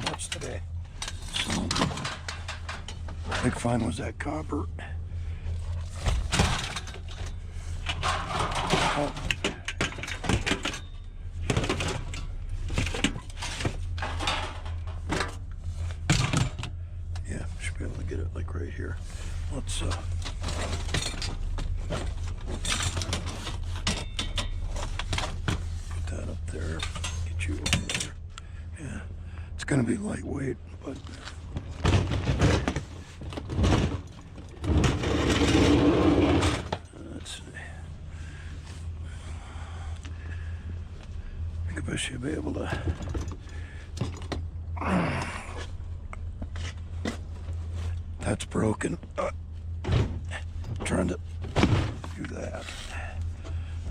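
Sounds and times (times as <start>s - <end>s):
scrap metal scraping: 34.7s - 36.8s.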